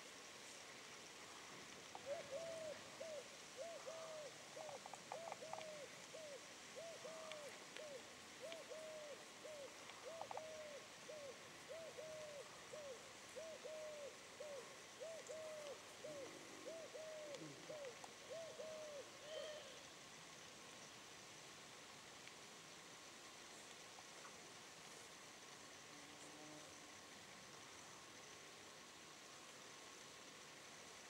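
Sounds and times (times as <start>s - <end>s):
bird cooing faintly: 1.9s - 20.0s.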